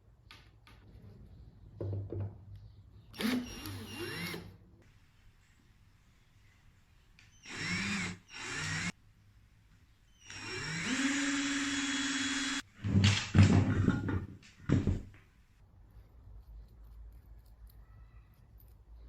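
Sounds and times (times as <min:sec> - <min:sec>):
power tool motor winding up: 0:03.2 - 0:04.5, 0:07.3 - 0:09.0, 0:10.2 - 0:12.7.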